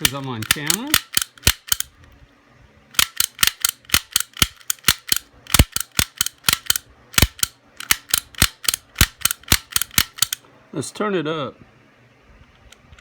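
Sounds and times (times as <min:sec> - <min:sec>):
lock pick gun clicking: 0:00.0 - 0:01.9, 0:03.0 - 0:10.4.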